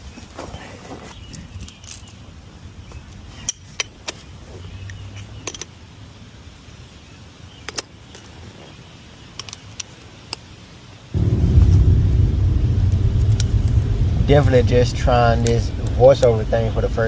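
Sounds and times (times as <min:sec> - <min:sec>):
faint low hum: 0:11.2 - 0:17.0.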